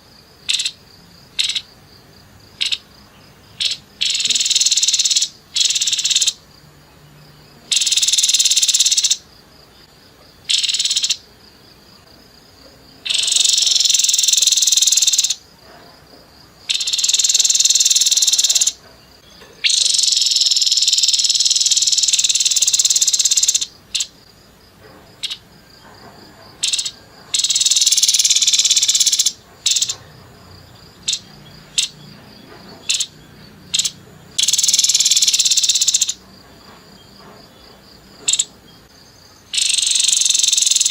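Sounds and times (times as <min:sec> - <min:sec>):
bird giving harsh rapid calls: 0:01.4 - 0:01.7, 0:02.6 - 0:02.9, 0:03.6 - 0:06.4, 0:07.7 - 0:09.2, 0:10.5 - 0:11.2, 0:13.0 - 0:15.4, 0:16.7 - 0:18.8, 0:19.6 - 0:24.2, 0:26.6 - 0:30.0, 0:32.8 - 0:36.2, 0:39.5 - 0:40.9.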